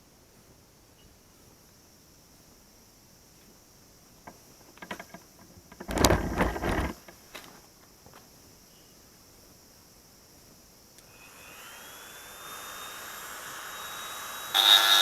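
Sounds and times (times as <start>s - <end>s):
harsh mechanical rattle: 4.8s - 7.2s.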